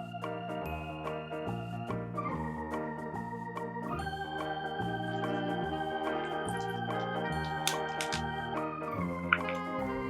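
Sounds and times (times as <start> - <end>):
organ-like keyboard chords: 0.0 - 10.0
short sharp clicks: 6.6 - 8.2.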